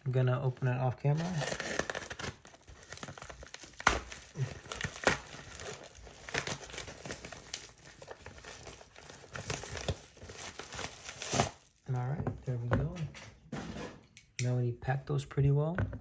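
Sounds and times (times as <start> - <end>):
packaging crinkling and rustling: 0.0 - 12.0
sharp packaging snaps: 1.2 - 11.8.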